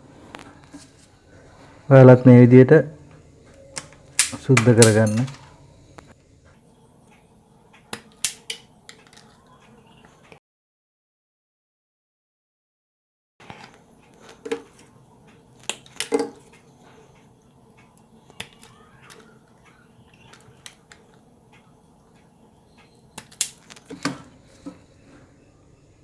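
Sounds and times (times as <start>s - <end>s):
tools clicking on electrical wires: 3.0s - 6.1s, 7.9s - 9.3s, 15.6s - 16.4s, 20.1s - 24.8s.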